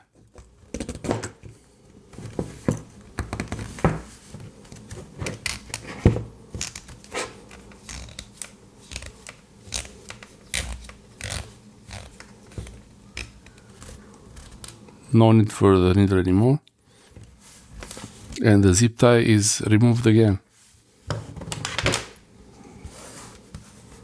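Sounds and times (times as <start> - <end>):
plastic zip tie clicks and scrapes: 6.6 - 12.3.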